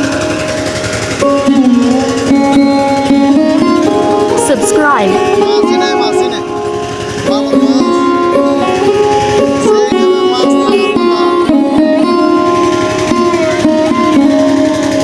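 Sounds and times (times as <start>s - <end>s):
sitar melody: 0.0s - 15.0s.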